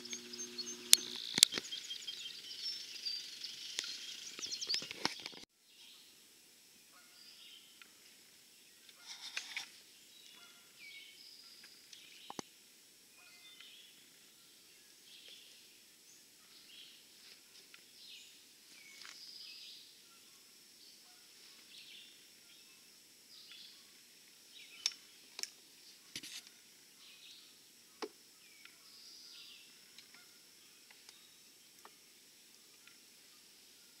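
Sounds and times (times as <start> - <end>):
thin steady high tone: 0.0 - 4.7
birds chirping: 0.0 - 6.0, 17.8 - 26.2.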